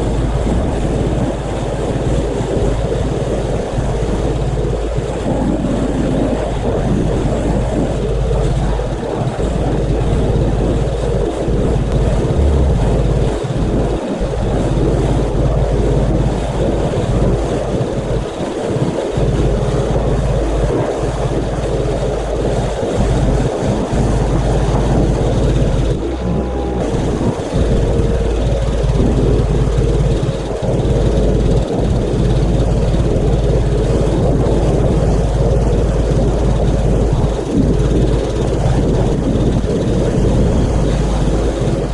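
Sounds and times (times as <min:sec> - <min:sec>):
pressure washer motor humming: 0:17.0 - 0:41.9.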